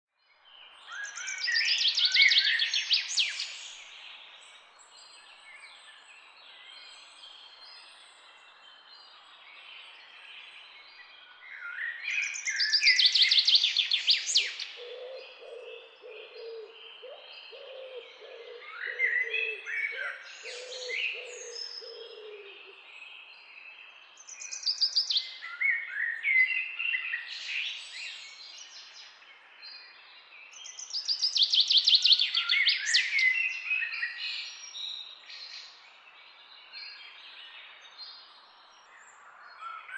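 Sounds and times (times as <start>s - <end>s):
loud trilling birdsong: 11.6s - 39.9s
soft bird chirps: 18.8s - 39.9s.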